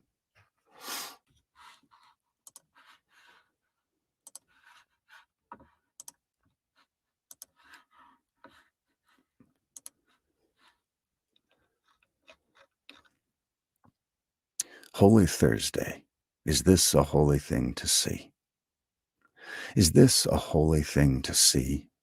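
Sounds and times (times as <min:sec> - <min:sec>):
faint irregular clicks: 0:01.6 - 0:03.0, 0:04.2 - 0:04.8, 0:05.5 - 0:06.6, 0:07.2 - 0:08.7, 0:09.4 - 0:10.7.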